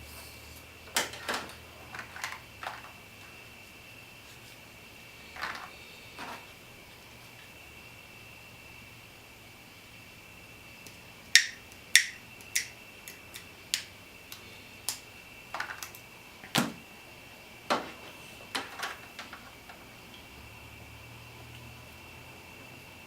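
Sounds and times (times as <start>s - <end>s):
hand tools clicking and snapping: 10.8s - 15.0s.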